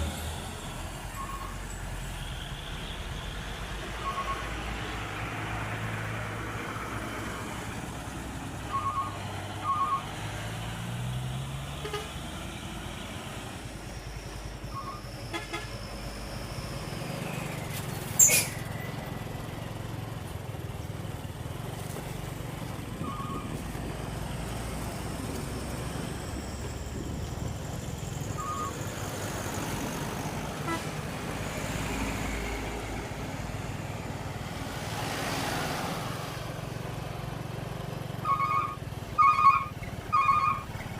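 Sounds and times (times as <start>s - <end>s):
heavy vehicle engines running: 0.0s - 40.9s.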